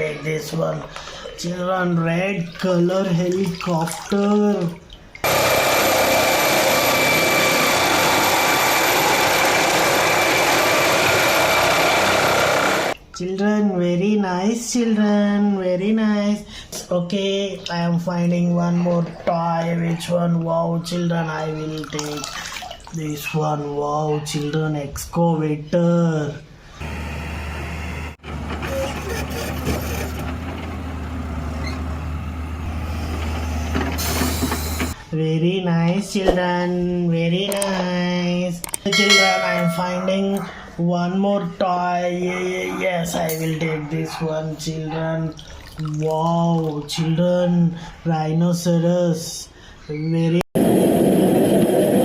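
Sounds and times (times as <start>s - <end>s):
toy excavator running: 5.2s - 13.0s
helicopter engine with high whine: 5.3s - 13.0s.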